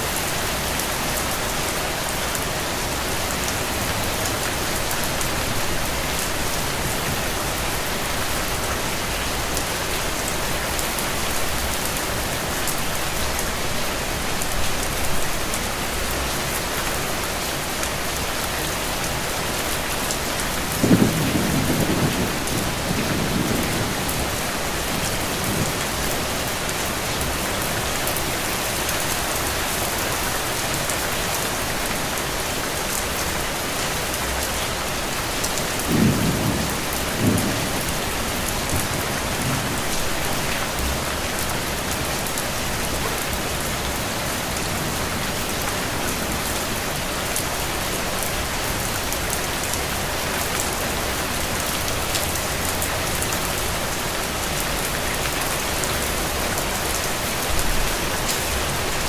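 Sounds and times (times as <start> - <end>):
steady rain falling: 0.0 - 59.0
thunder rumbling: 20.7 - 26.4.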